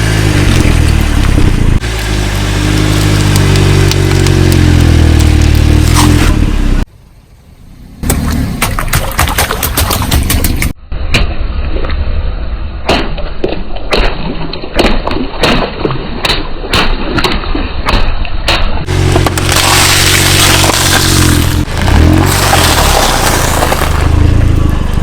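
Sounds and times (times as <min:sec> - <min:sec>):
car engine running: 0:00.0 - 0:06.9, 0:18.8 - 0:25.0
objects crushed under car tyres: 0:18.8 - 0:24.7.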